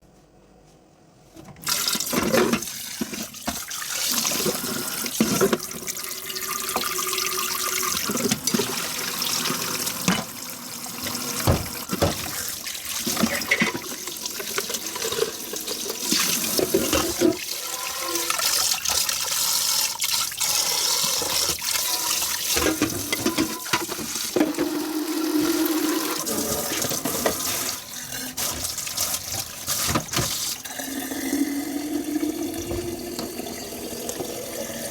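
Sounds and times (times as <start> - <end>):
tap water splashing over dishes: 1.6 - 34.9
dishes clinking: 22.5 - 24.7.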